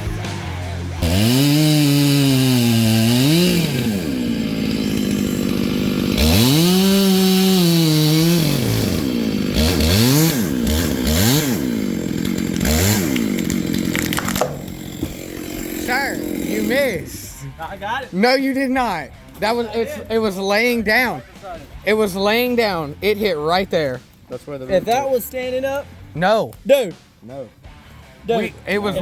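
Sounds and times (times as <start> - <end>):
chainsaw cutting wood: 0.0 - 17.6
chainsaw throttle blips: 1.0 - 17.3.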